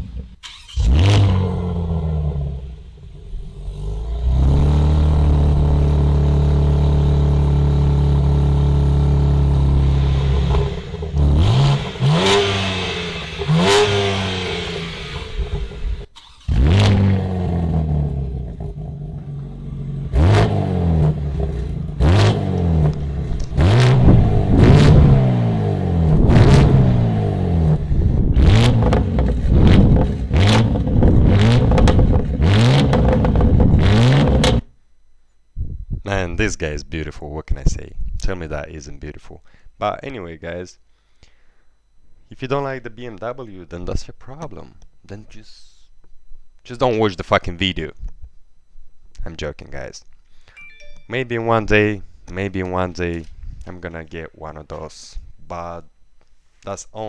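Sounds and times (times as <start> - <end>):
car engine revving: 0.0 - 34.6
exhaust cracks: 0.0 - 34.7.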